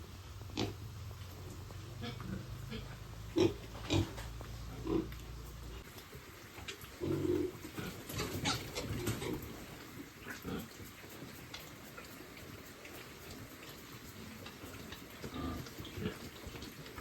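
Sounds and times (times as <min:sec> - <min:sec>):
piglets grunting: 0:01.8 - 0:05.8, 0:10.2 - 0:10.8.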